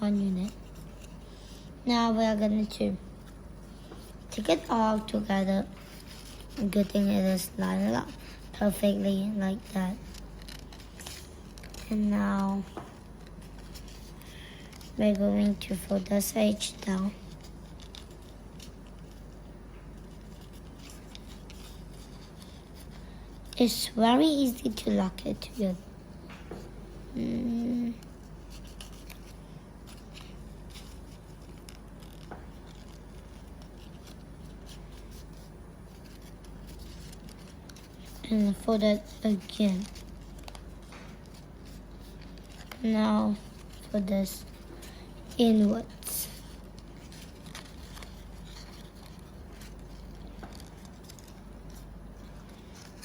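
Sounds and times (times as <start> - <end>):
paper folding and creasing: 0.0 - 25.8, 27.2 - 53.0
low background hum: 0.0 - 53.0.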